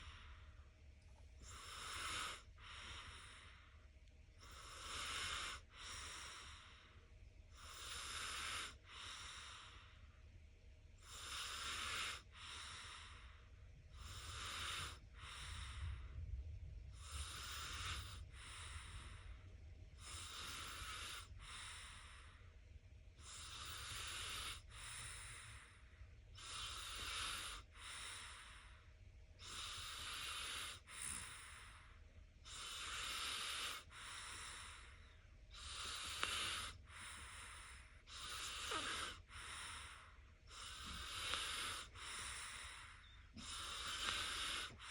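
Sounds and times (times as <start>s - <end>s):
child snoring: 1.4s - 3.4s, 4.4s - 6.6s, 7.6s - 9.7s, 11.0s - 13.2s, 14.0s - 15.7s, 17.0s - 18.8s, 20.0s - 22.0s, 23.2s - 25.5s, 26.4s - 28.5s, 29.4s - 31.7s, 32.5s - 34.9s, 35.5s - 42.8s, 43.4s - 44.9s.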